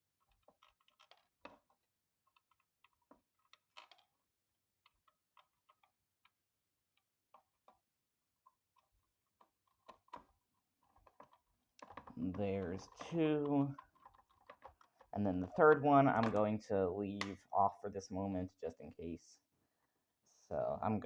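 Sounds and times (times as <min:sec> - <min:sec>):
screwdriver clicking in plastic: 0:10.9 - 0:12.1.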